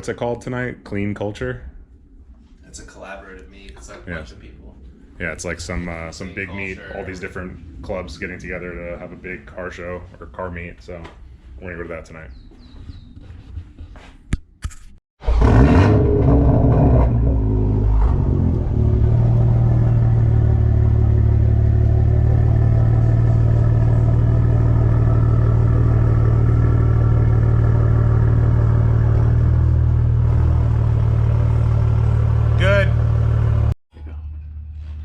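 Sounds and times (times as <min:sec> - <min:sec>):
motor droning: 0:15.4 - 0:34.7.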